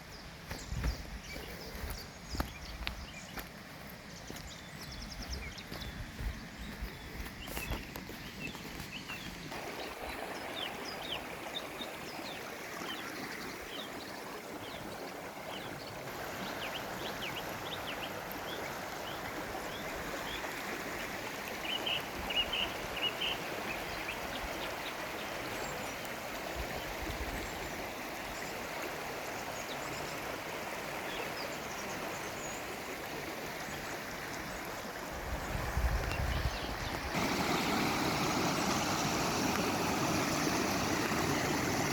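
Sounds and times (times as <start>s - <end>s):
small birds chirping: 0.0s - 20.4s
stream rushing water: 0.0s - 41.9s.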